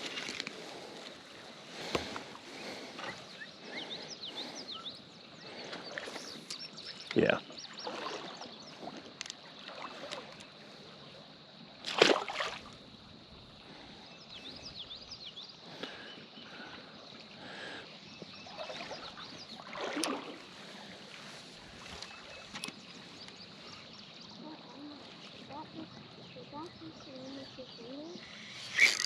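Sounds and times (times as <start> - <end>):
creek water splashing: 0.0 - 11.0, 11.6 - 14.1, 15.6 - 29.0
louder splashes: 11.9 - 12.7, 19.6 - 20.4.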